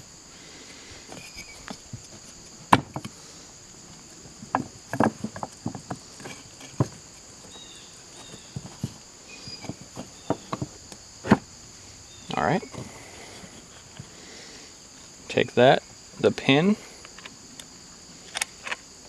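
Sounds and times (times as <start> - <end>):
crickets chirring: 0.0 - 19.0
clicks and knocks of plastic parts: 4.2 - 7.2.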